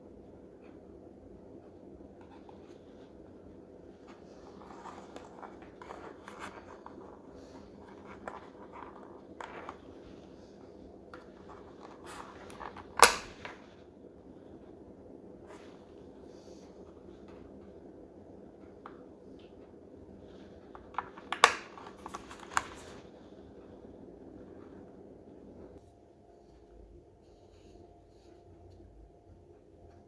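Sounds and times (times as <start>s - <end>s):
small clicks and handling rustles: 3.9s - 13.7s, 20.3s - 23.2s.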